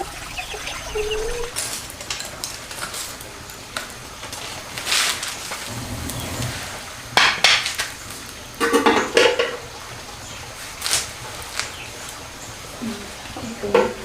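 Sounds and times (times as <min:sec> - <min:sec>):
dishes and utensils clattering: 0:08.6 - 0:09.7.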